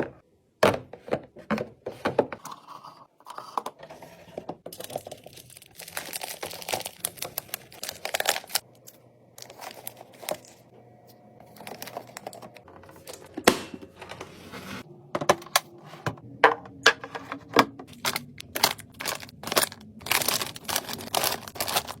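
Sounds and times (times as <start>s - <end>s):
packaging crinkling: 4.7s - 10.7s, 11.4s - 13.3s, 17.9s - 22.0s.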